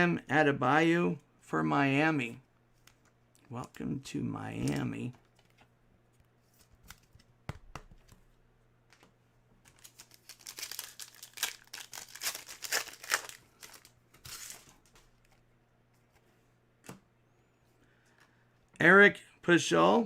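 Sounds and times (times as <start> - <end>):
plastic wrapper tearing and crinkling: 9.7 - 15.0.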